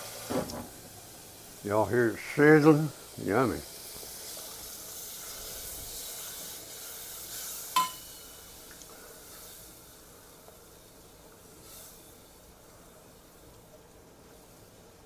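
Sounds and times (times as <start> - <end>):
water sizzling in hot pan: 0.0 - 15.0
utensil clinking against pan: 7.8 - 8.1.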